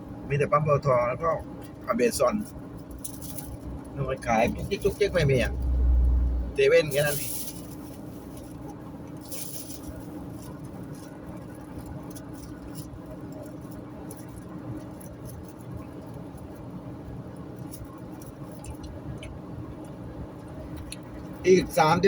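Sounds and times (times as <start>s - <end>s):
car road and engine noise: 0.0s - 22.0s.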